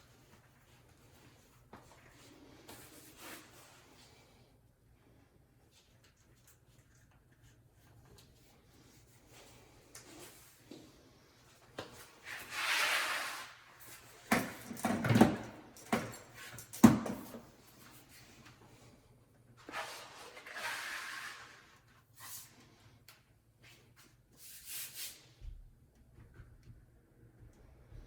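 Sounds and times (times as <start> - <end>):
scraping swishes on floor: 12.0 - 14.2, 19.6 - 22.7.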